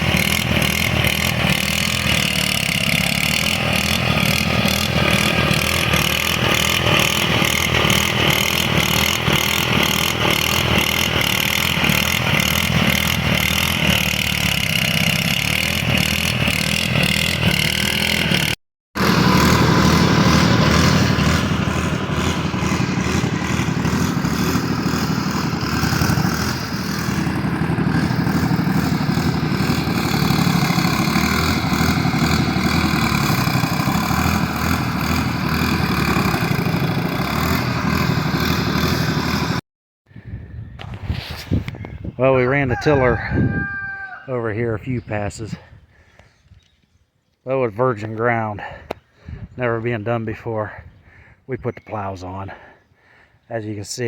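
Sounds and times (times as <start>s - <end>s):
garden tractor engine running: 0.0s - 39.6s.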